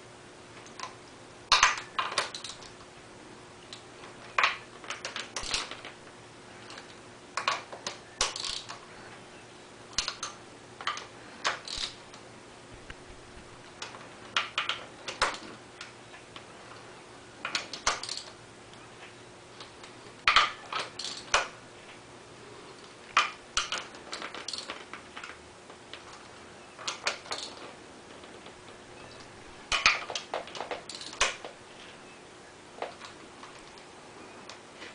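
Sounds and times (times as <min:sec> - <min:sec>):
metal tools clinking: 0:20.3 - 0:21.4.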